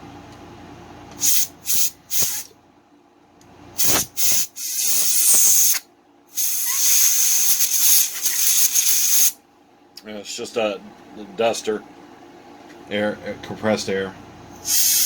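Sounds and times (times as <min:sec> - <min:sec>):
compressed air spraying hiss: 0:01.2 - 0:02.5, 0:03.8 - 0:05.8, 0:06.4 - 0:09.4, 0:14.6 - 0:15.0.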